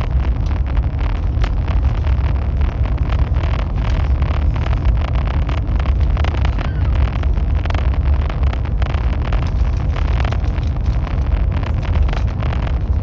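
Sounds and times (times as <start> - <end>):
constant crackling: 0.0 - 13.0
train low rumble: 0.0 - 13.0.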